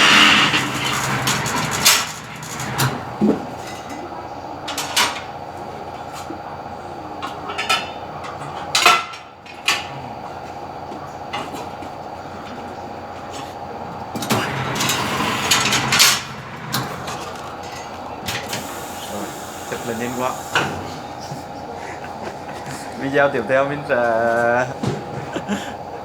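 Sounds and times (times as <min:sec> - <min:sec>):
loud rasping: 0:00.0 - 0:03.3
metal tools clanking: 0:00.0 - 0:04.0, 0:14.2 - 0:20.1
machine hum: 0:00.0 - 0:04.6, 0:12.0 - 0:24.0.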